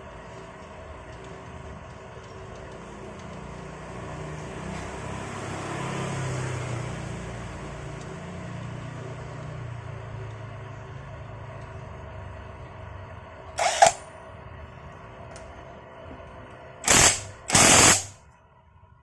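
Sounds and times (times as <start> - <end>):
cordless impact wrench running: 13.6 - 14.0, 16.8 - 18.2.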